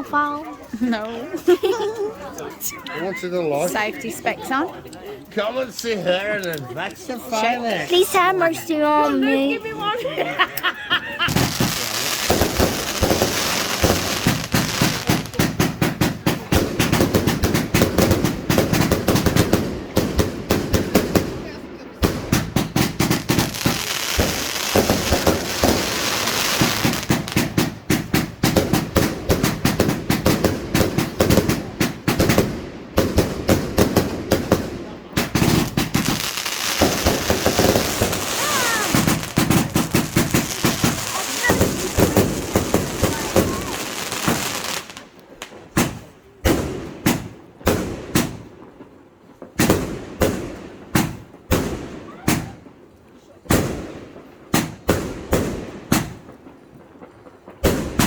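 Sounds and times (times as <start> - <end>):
fireworks bangs and crackles: 7.1 - 9.9, 11.1 - 58.0
fireworks hissing: 11.1 - 46.1.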